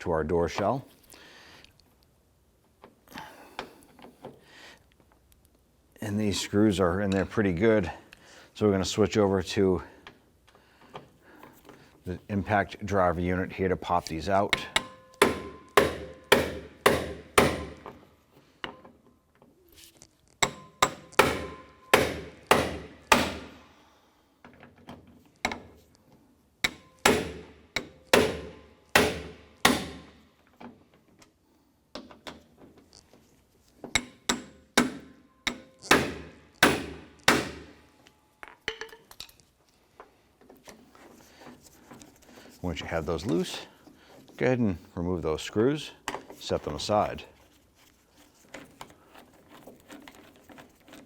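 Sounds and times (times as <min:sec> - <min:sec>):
hammer striking metal: 0:14.5 - 0:17.8, 0:20.4 - 0:23.6, 0:26.6 - 0:30.1, 0:34.0 - 0:37.7.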